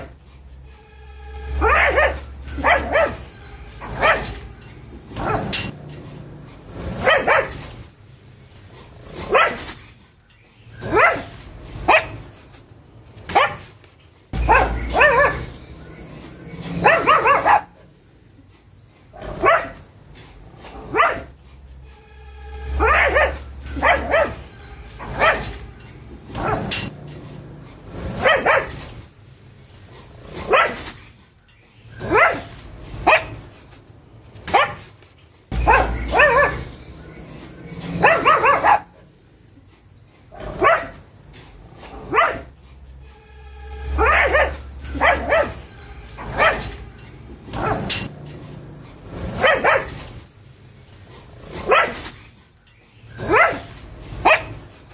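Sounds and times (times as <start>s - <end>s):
dog barking and yipping: 1.4s - 5.8s, 6.7s - 7.9s, 8.8s - 9.9s, 10.7s - 12.5s, 13.1s - 13.8s, 14.4s - 18.0s, 19.1s - 21.4s, 22.7s - 27.0s, 27.9s - 29.0s, 30.0s - 31.1s, 31.8s - 33.7s, 34.3s - 39.2s, 40.3s - 42.6s, 43.8s - 48.1s, 49.0s - 50.3s, 51.2s - 52.2s, 53.1s - 54.9s.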